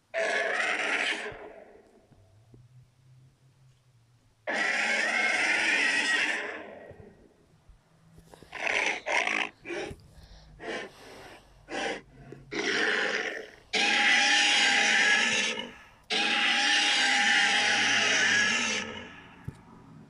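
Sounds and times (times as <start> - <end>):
monster rasping roars: 11.7 - 19.2.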